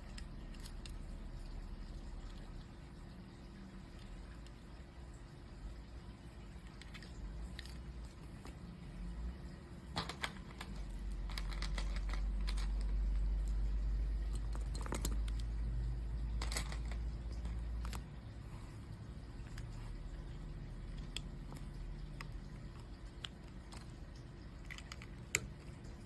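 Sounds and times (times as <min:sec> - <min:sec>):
plastic bricks clicking: 0:09.9 - 0:13.6, 0:16.4 - 0:18.0.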